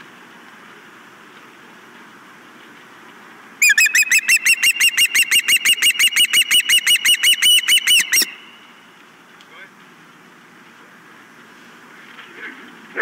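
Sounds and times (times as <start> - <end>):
osprey whistled chirps: 3.6 - 8.8.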